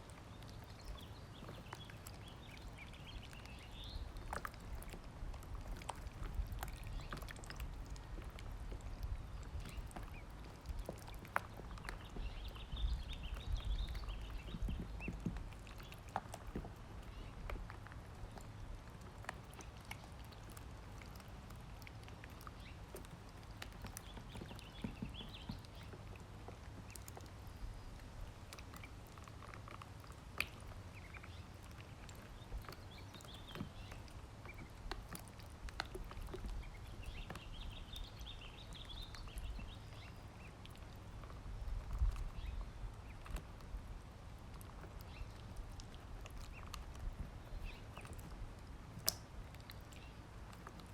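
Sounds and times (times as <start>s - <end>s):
ducklings pecking food: 0.0s - 50.9s
ducklings peeping: 0.5s - 5.0s, 5.6s - 18.4s, 28.7s - 43.4s.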